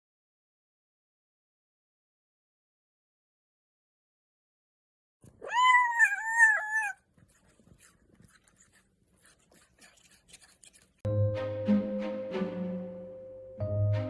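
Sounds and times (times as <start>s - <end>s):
cat meowing: 5.3s - 7.0s.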